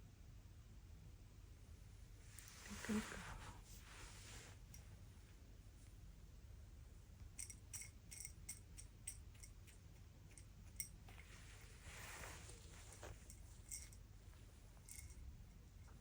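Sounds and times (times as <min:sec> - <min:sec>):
soft rustle: 0:02.2 - 0:06.0, 0:11.0 - 0:16.0.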